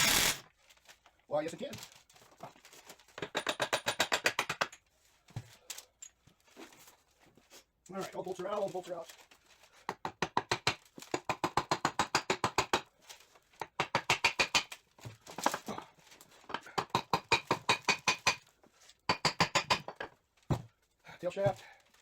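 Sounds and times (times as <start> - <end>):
hand ratchet clicking: 0.0 - 0.4.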